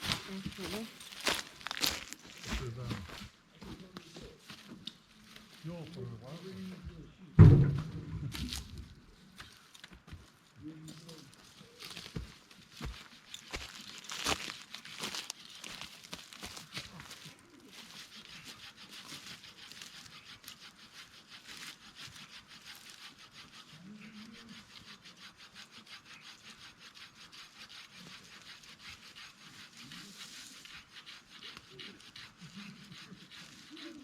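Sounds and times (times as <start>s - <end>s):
hand saw cutting wood: 0.0s - 3.2s, 10.9s - 34.0s.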